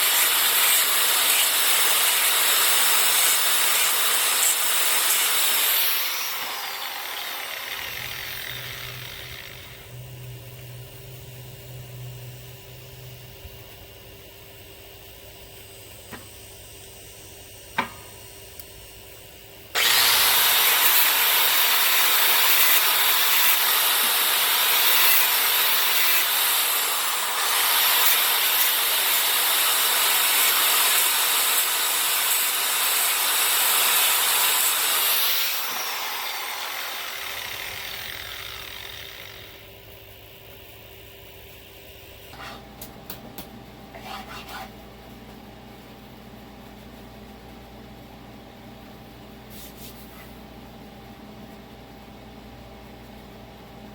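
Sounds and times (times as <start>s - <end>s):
power tool grinding steel: 0.0s - 10.0s, 19.8s - 39.8s, 43.9s - 44.8s.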